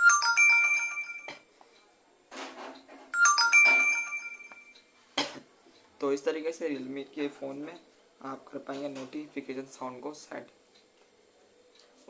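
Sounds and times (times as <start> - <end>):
phone notification tone: 0.0 - 1.4, 3.2 - 4.8.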